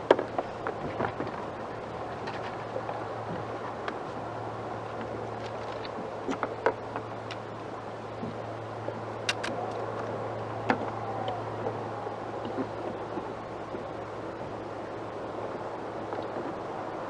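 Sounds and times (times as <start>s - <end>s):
wind: 0.0s - 17.0s
sharp knock: 9.3s - 9.6s.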